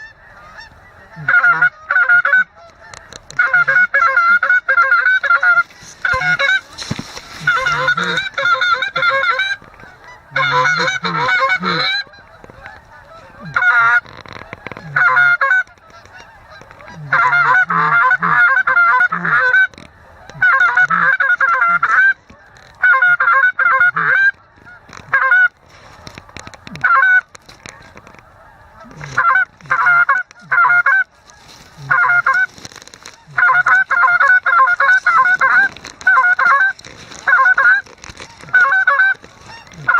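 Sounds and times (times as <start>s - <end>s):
goose call honks and clucks: 0.0s - 39.9s.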